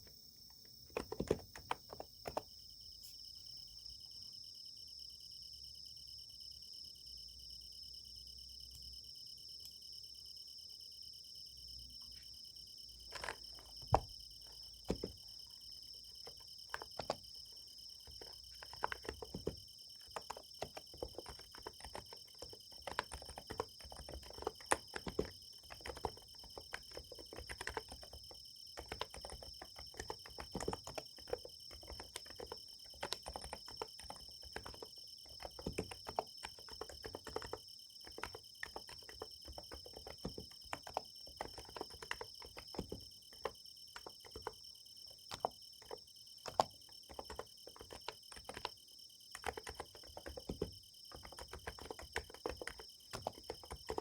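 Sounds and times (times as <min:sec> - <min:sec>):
keyboard typing: 0:00.0 - 0:02.6, 0:13.1 - 0:54.0
insects chirping: 0:00.0 - 0:54.0.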